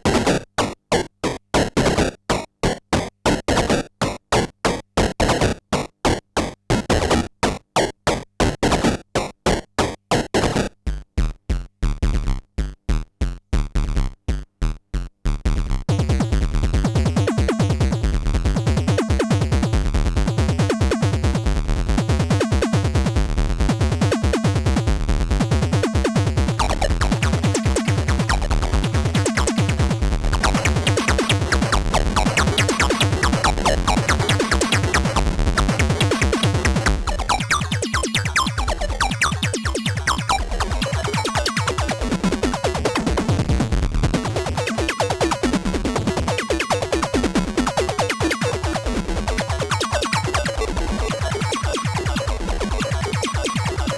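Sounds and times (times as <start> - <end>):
synthesizer playing clipped notes: 25.7 - 53.9.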